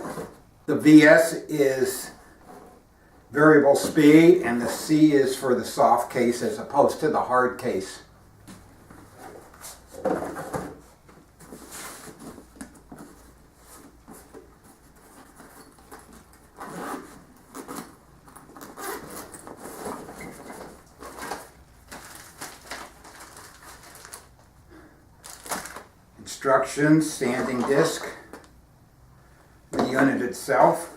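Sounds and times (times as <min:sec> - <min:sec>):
packaging rustling in cardboard box: 0:09.2 - 0:24.4, 0:25.2 - 0:25.9.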